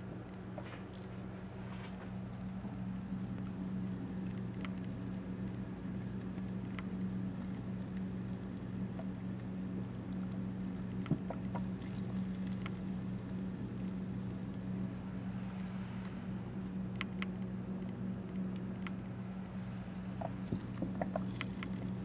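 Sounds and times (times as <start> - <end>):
steady low hum: 0.0 - 22.0
drain water bubbling: 2.7 - 15.0, 19.8 - 22.0.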